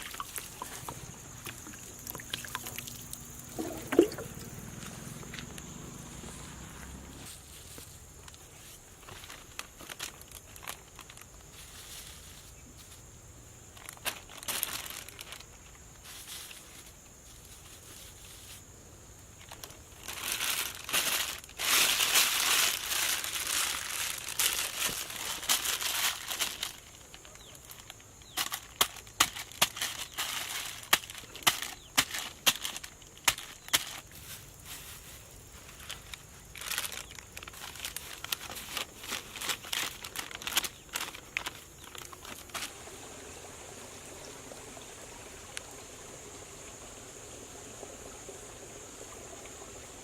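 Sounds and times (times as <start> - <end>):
dry material crinkling: 7.2 - 13.0, 13.7 - 18.6, 19.4 - 42.8.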